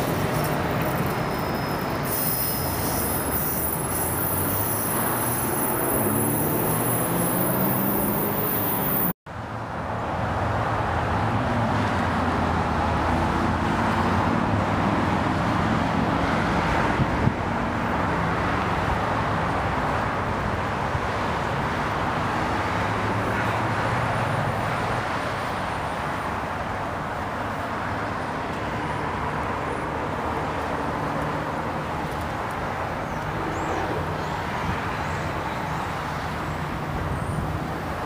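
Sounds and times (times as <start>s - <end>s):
train rushing past: 0.0s - 9.1s.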